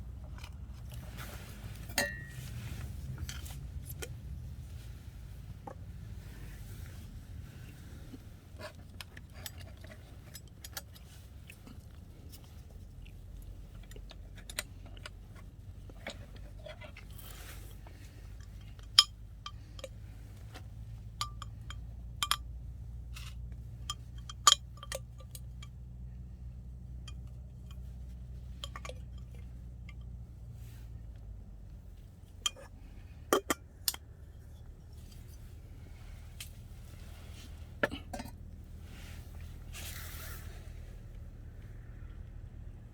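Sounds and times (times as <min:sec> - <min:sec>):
low steady hum: 0:00.0 - 0:42.9
cups and utensils clinking: 0:01.7 - 0:02.8.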